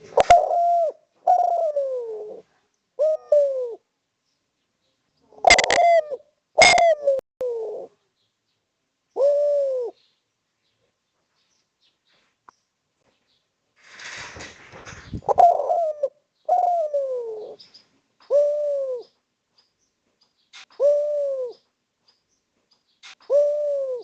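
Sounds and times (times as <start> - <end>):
dove cooing: 0.0 - 3.9, 5.3 - 8.0, 9.2 - 10.0, 15.2 - 19.2, 20.7 - 21.6, 23.2 - 24.0
rustling ending in a thump: 13.8 - 15.5.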